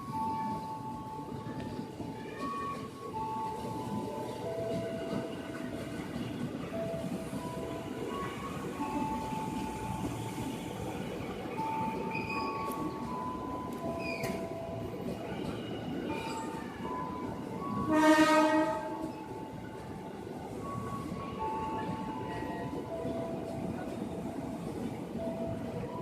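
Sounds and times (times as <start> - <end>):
electric train running: 0.0 - 26.0
train brake squeals: 11.7 - 19.4
train horn blast: 17.8 - 19.1.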